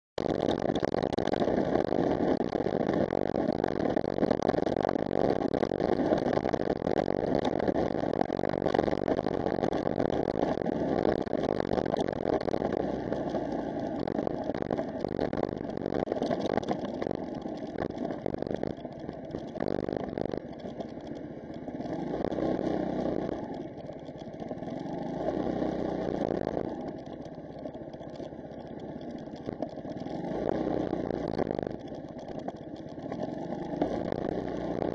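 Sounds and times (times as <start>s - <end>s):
vehicle engine and road noise: 0.2s - 34.9s.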